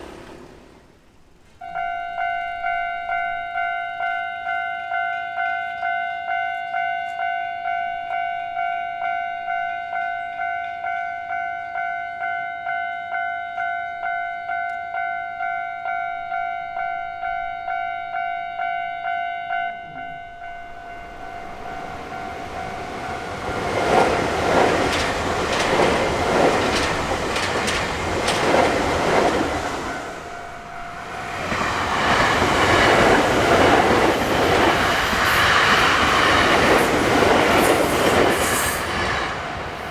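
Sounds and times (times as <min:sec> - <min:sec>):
level crossing warning bell ringing: 0:01.6 - 0:38.3
train wheels clicking over rail joints: 0:20.8 - 0:39.9.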